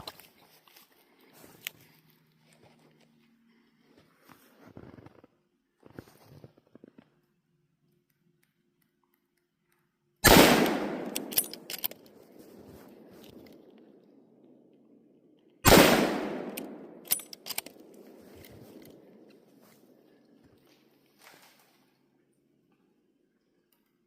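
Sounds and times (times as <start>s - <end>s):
shotgun blasts echoing: 10.2s - 11.7s, 15.6s - 19.3s
sharp clicks: 10.3s - 12.1s, 15.7s - 19.0s.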